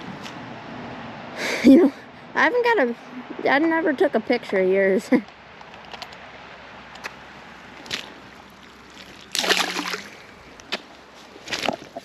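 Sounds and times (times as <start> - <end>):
water splashing: 7.0 - 12.0.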